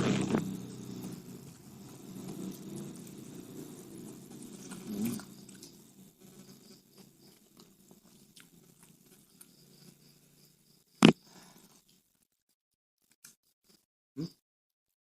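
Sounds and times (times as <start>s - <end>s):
chewing crunchy fried snacks: 7.0s - 9.6s.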